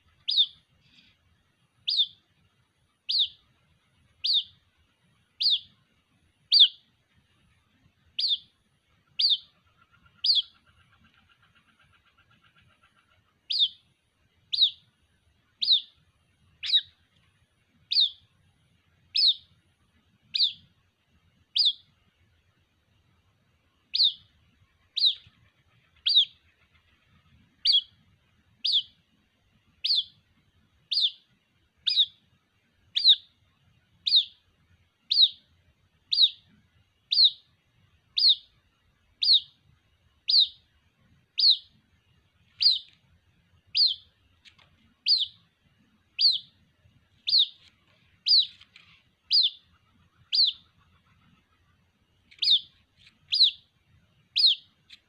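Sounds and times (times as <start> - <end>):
bird chick calling: 0.0 - 1.2, 1.8 - 2.2, 3.0 - 3.4, 4.2 - 4.6, 5.4 - 5.8, 6.5 - 6.8, 8.2 - 8.5, 9.1 - 13.9, 14.5 - 14.9, 15.6 - 16.0, 16.6 - 17.1, 17.9 - 18.3, 19.1 - 19.5, 20.3 - 20.7, 21.6 - 21.9, 23.9 - 28.0, 28.6 - 29.0, 29.8 - 30.2, 30.9 - 32.2, 33.0 - 33.3, 34.0 - 34.4, 35.1 - 35.5, 36.1 - 36.5, 37.1 - 37.5, 38.1 - 38.5, 39.2 - 39.6, 40.2 - 40.7, 41.3 - 41.8, 42.5 - 43.0, 43.7 - 45.5, 46.1 - 46.6, 47.2 - 53.7, 54.3 - 55.0.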